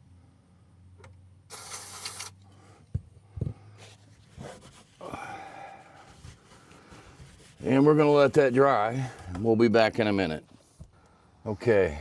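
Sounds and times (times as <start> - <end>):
aerosol can spraying: 1.5 - 2.4
rubbing handling noise: 1.5 - 11.0.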